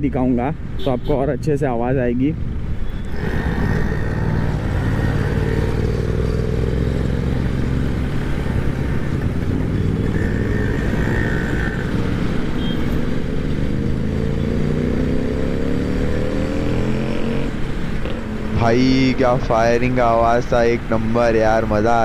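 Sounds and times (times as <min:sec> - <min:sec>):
motorcycle engine through loud exhaust: 0:03.0 - 0:18.3.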